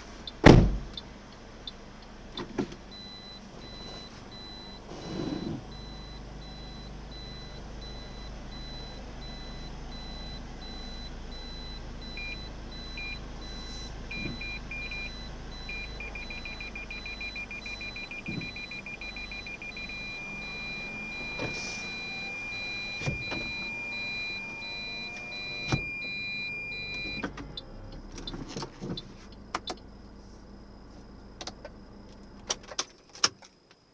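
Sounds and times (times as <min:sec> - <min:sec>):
parking sensor beeps: 0:02.4 - 0:28.4
low running sound: 0:02.9 - 0:27.1.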